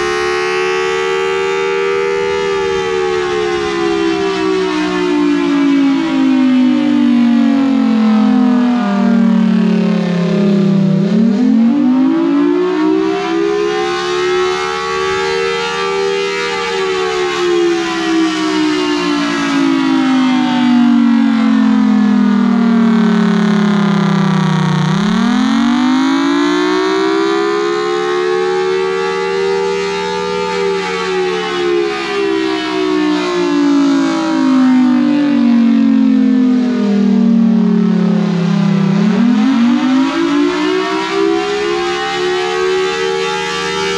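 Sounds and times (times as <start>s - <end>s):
warning siren wailing: 0.0s - 43.9s.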